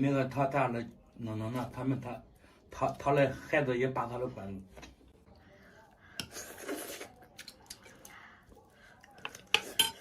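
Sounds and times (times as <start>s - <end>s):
tableware clicking and scraping: 9.3s - 10.0s.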